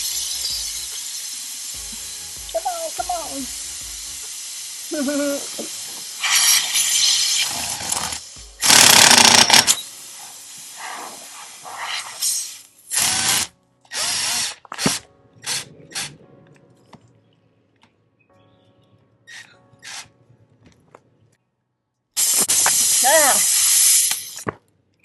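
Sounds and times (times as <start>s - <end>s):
cordless impact driver bursts: 6.2s - 9.9s, 12.9s - 16.1s.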